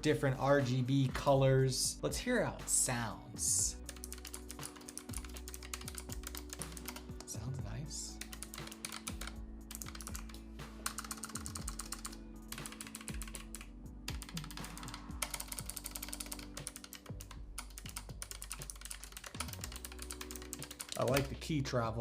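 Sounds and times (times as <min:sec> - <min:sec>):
mechanical keyboard typing: 0:03.8 - 0:07.4, 0:08.2 - 0:21.4.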